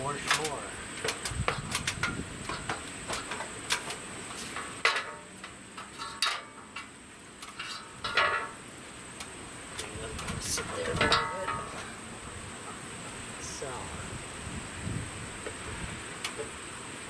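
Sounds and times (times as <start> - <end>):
sheet metal pipes clanking: 0.0 - 8.6, 9.8 - 12.0.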